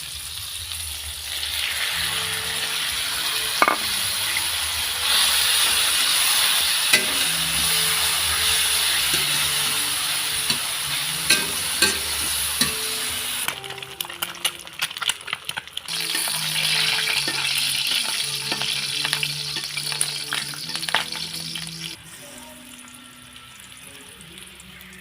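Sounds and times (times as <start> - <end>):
food sizzling in frying pan: 0.0 - 25.0
utensil clinking on pan: 3.6 - 4.0, 7.0 - 7.3, 10.5 - 14.6, 15.9 - 21.3.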